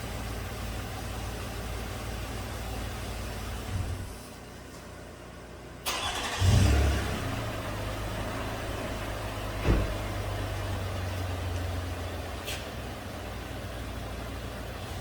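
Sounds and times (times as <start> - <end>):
engine idling: 0.0 - 15.0
engine cranking and starting: 5.8 - 7.4
single thump: 9.6 - 10.0.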